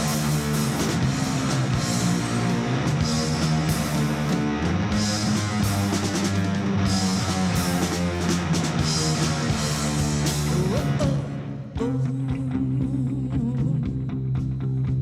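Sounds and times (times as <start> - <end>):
drum kit with cymbals: 0.0 - 11.4
bass guitar: 0.0 - 15.0
electric guitar: 0.0 - 15.0.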